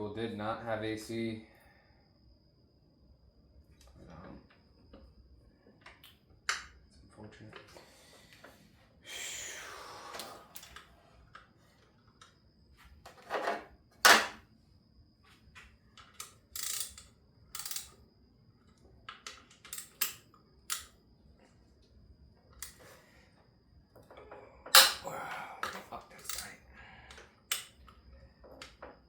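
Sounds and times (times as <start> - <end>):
hand tools clanking on metal: 24.7 - 26.5.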